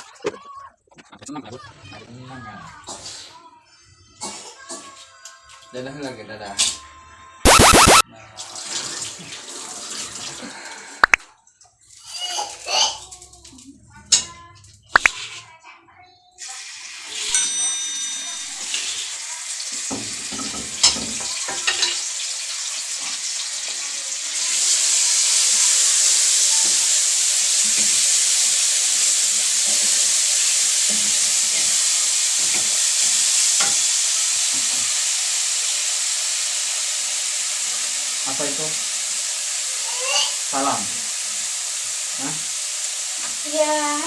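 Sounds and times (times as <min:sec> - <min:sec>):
food sizzling in hot oil: 0:16.4 - 0:44.0.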